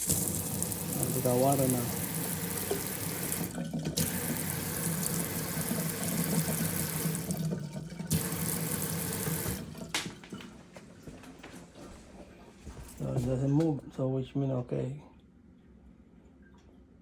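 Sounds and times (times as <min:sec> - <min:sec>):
water running hard: 0:00.0 - 0:10.2.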